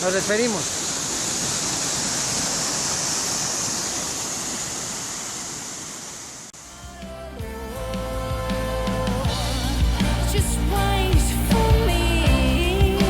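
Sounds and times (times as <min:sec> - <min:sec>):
waterfall rushing: 0:00.0 - 0:06.5
music: 0:06.6 - 0:13.0.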